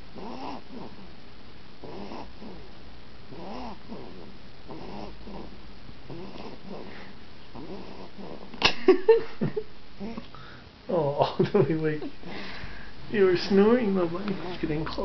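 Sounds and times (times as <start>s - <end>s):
child snoring: 0.2s - 1.1s, 1.8s - 8.6s, 10.0s - 10.3s.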